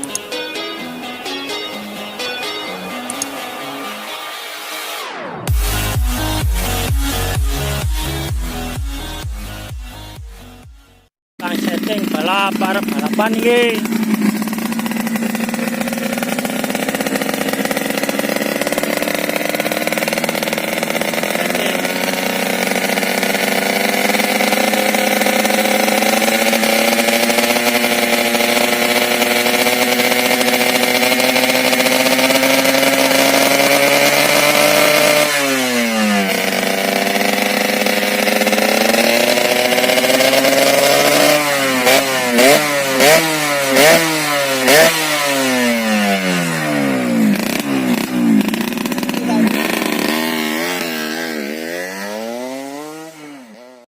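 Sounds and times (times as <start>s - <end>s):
motorcycle engine revving: 0.0s - 53.9s.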